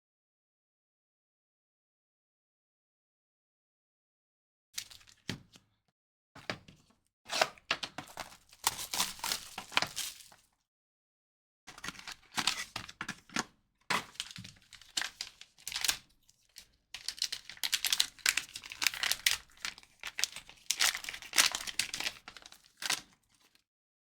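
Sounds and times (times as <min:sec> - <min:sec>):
wrappers tearing and crinkling: 0:08.1 - 0:10.4, 0:14.1 - 0:16.0, 0:17.0 - 0:23.6.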